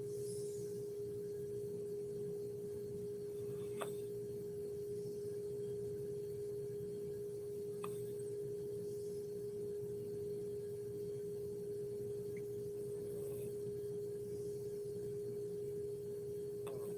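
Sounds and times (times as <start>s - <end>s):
steady hum: 0.0s - 16.9s.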